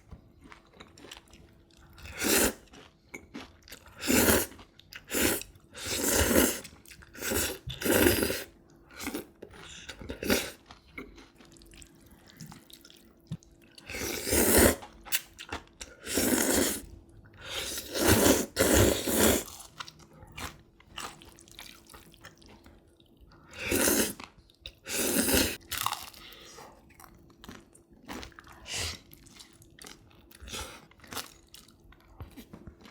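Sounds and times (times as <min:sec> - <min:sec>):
chewing: 0:00.1 - 0:05.6, 0:19.4 - 0:24.8, 0:25.8 - 0:32.9.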